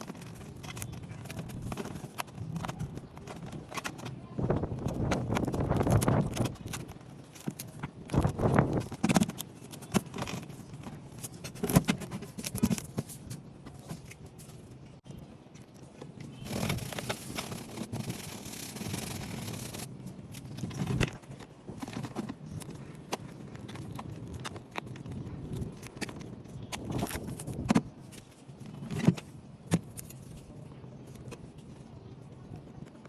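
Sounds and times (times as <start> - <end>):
steady scraping: 16.4 - 24.4.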